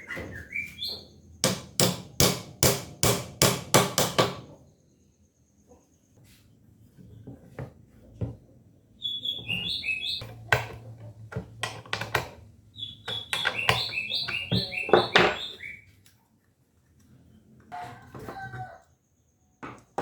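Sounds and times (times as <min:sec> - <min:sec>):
sharp knocks: 0:01.4 - 0:04.5
small bird chirping: 0:09.0 - 0:10.4, 0:12.7 - 0:16.0.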